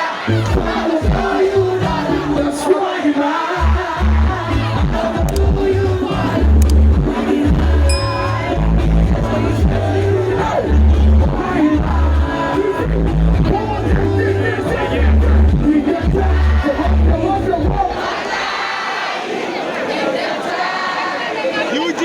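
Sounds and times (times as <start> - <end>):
live pop music: 0.0 - 18.1
faint crowd: 0.0 - 22.0
person singing: 0.4 - 17.8
heavy pulsing bass line: 3.6 - 17.9.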